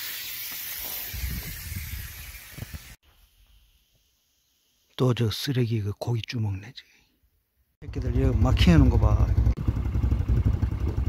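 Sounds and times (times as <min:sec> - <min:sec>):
steady hiss: 0:00.0 - 0:05.6.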